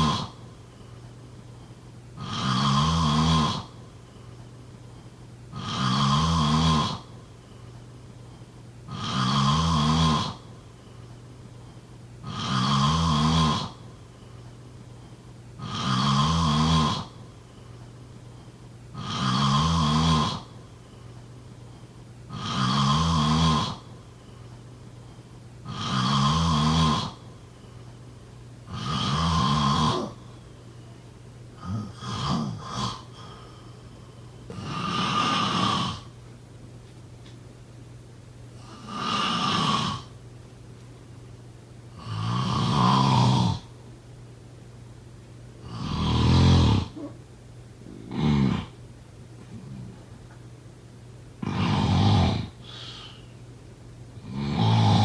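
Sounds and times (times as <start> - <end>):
person snoring: 0.0 - 0.4, 2.2 - 3.8, 5.5 - 7.1, 8.9 - 10.5, 12.2 - 13.8, 15.6 - 17.2, 18.9 - 20.6, 22.3 - 24.0, 25.6 - 27.3, 28.7 - 30.4, 31.6 - 36.1, 38.6 - 40.1, 41.9 - 43.7, 45.6 - 47.2, 47.8 - 48.8, 51.4 - 53.3, 54.2 - 55.0.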